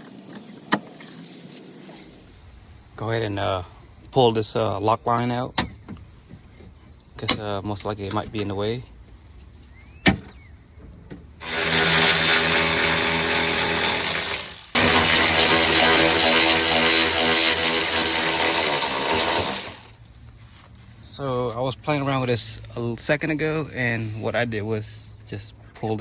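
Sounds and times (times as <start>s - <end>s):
power tool motor running hard: 11.4s - 20.0s.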